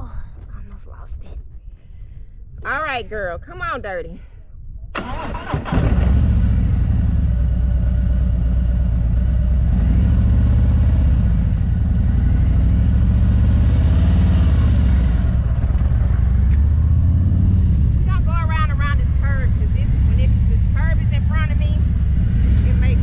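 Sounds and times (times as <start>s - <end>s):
motorcycle engine running: 5.6s - 23.0s.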